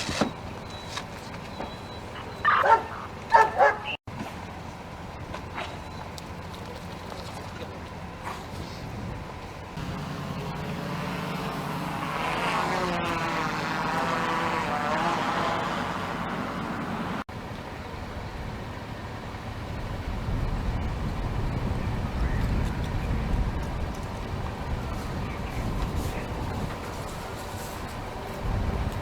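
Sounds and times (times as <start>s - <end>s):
vehicle engine passing by: 9.8s - 29.0s.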